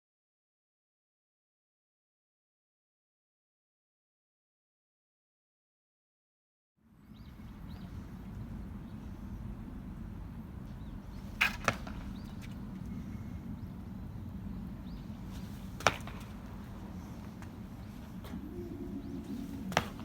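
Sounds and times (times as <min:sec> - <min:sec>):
low outdoor background noise: 0:06.8 - 0:20.0
footfalls on a track: 0:11.3 - 0:12.6, 0:15.3 - 0:18.4, 0:19.7 - 0:20.0.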